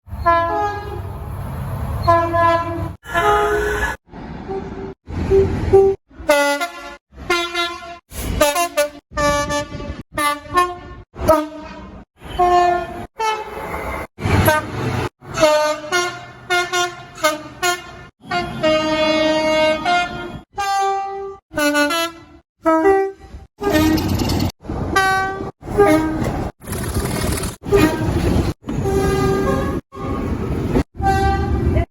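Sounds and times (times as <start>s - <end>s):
train horn blasts: 0.2s - 1.0s, 2.0s - 13.7s, 14.4s - 24.0s, 25.0s - 26.3s, 27.7s - 30.4s, 31.0s - 31.8s.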